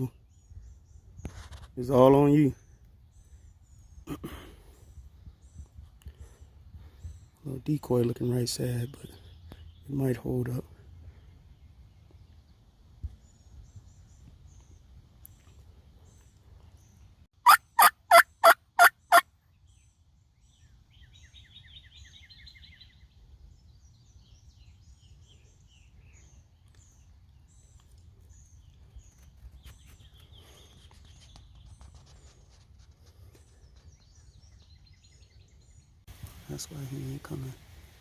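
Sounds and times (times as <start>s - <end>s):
songbird trills and chirps: 0.0s - 37.6s
turkey yelping: 17.4s - 19.2s.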